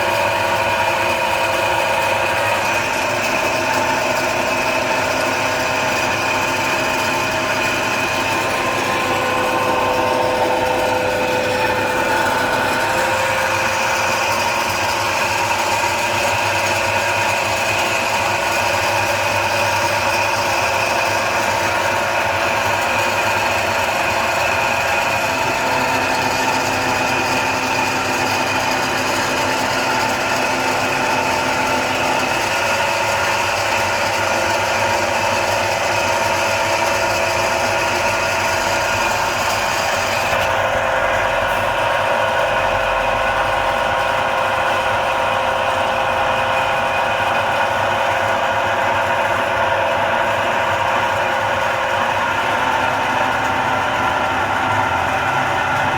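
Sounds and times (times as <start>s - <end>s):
noodle machine motor humming: 0.0s - 55.9s
low machine note: 0.1s - 16.4s.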